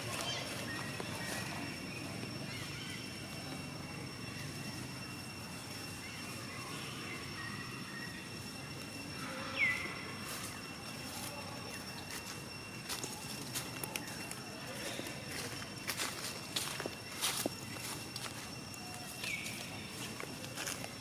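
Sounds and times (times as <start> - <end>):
steady high whine: 0.0 - 21.0.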